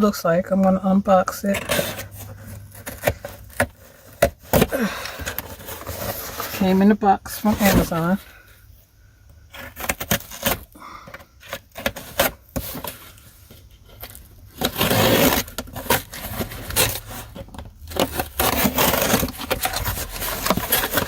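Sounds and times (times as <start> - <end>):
cardboard scraping and rustling: 0.8 - 8.5, 9.5 - 21.0.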